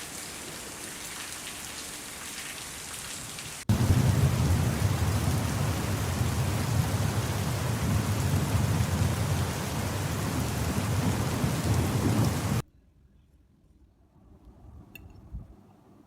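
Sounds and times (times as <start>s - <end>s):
heavy rain: 0.0s - 12.6s.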